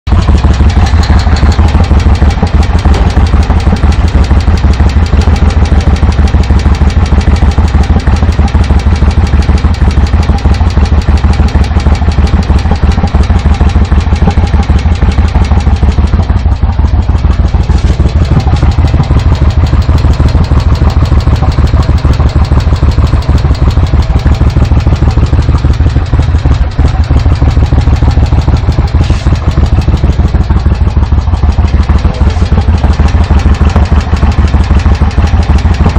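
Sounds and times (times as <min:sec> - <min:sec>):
engine knocking: 0:00.0 - 0:35.9.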